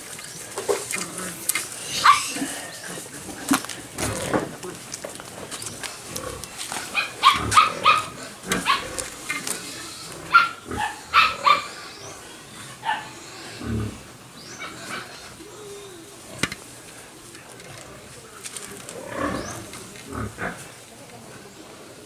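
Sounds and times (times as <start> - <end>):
dog barking: 2.0 - 2.3, 6.9 - 9.1, 10.2 - 11.8, 12.8 - 13.2.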